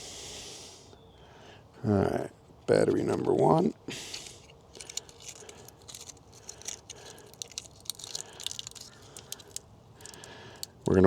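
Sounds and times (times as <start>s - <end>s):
small plastic clicks and scrapes: 4.2s - 10.8s.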